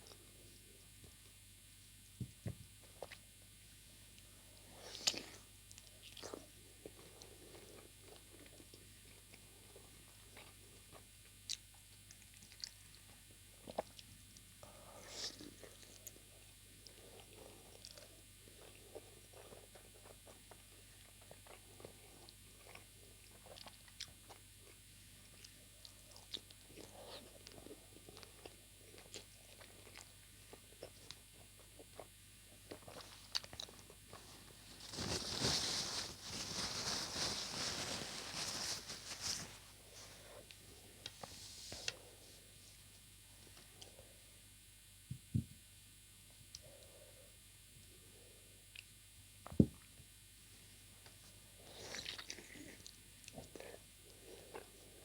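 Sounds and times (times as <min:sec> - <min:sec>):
chewing and biting food: 0:15.1 - 0:34.6, 0:51.6 - 0:55.0.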